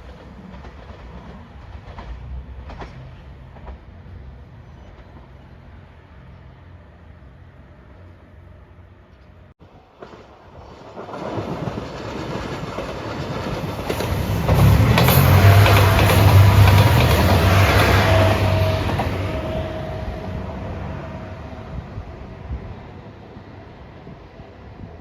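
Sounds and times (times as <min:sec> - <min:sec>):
train wheels clacking over rails: 0:00.0 - 0:04.0, 0:10.0 - 0:20.4.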